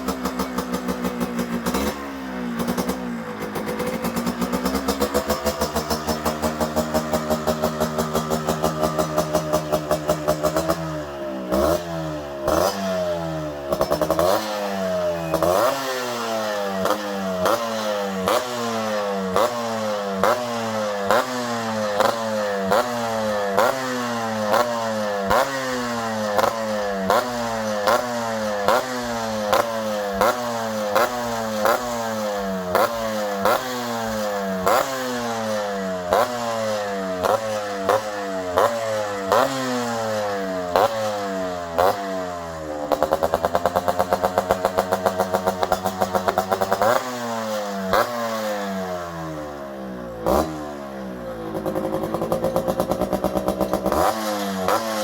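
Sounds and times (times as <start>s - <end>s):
exhaust cracking: 0.0s - 14.4s, 42.7s - 47.2s, 50.2s - 55.0s
motorcycle engine revving: 0.0s - 55.0s.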